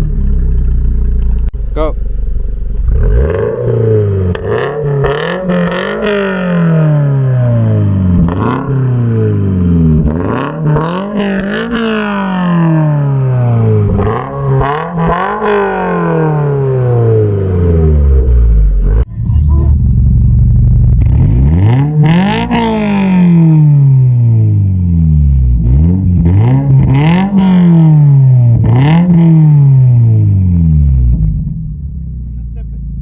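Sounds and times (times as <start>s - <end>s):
car engine revving: 0.0s - 33.0s
exhaust cracks: 0.0s - 33.0s.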